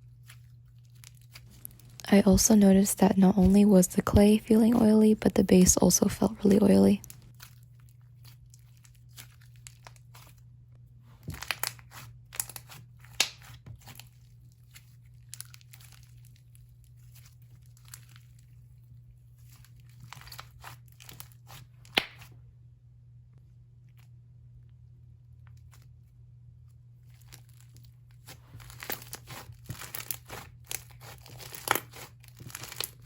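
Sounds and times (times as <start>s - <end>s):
slime crackling and popping: 11.2s - 18.4s, 19.6s - 22.3s, 27.2s - 33.0s.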